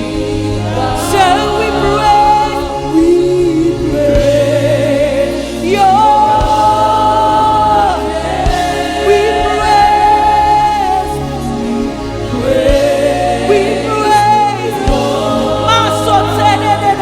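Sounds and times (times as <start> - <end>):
choir singing: 0.0 - 17.0
lead voice singing: 0.0 - 17.0
band with bass and beat: 4.0 - 17.0.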